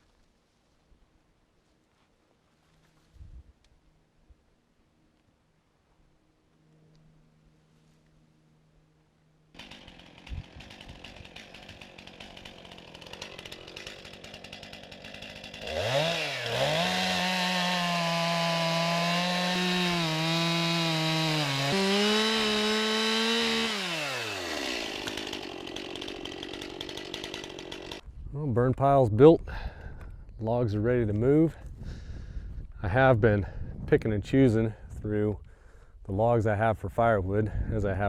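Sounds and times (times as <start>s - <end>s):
chainsaw cutting through log: 9.5s - 28.0s.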